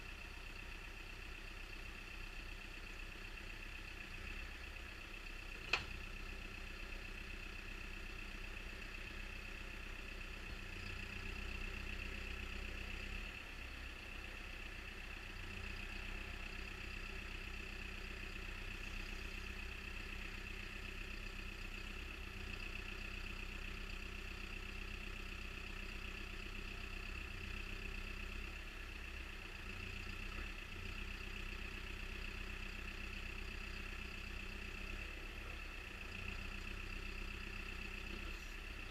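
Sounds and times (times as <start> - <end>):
diesel engine idling: 0.0 - 38.9
sharp click: 5.6 - 6.0.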